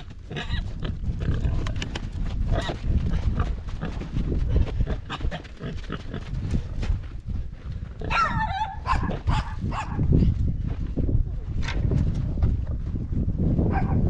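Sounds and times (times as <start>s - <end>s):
rustling and clicking: 1.2s - 2.8s.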